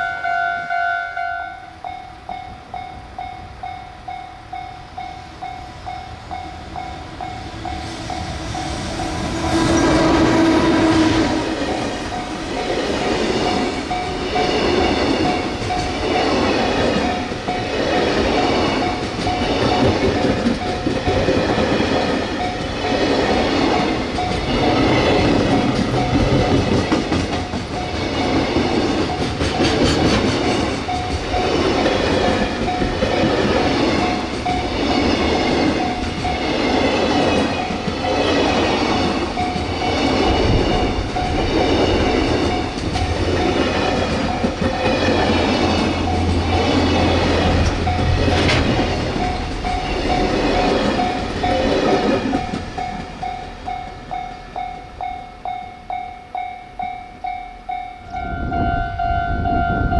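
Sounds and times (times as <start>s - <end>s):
train horn: 0.0s - 1.8s, 8.0s - 12.8s, 58.2s - 59.9s
level-crossing warning bell: 0.0s - 59.9s
train wheels clattering over rails: 5.9s - 55.0s.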